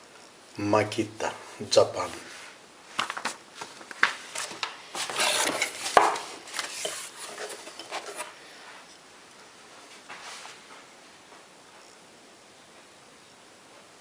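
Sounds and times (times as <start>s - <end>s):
packaging rustling: 2.9s - 8.4s.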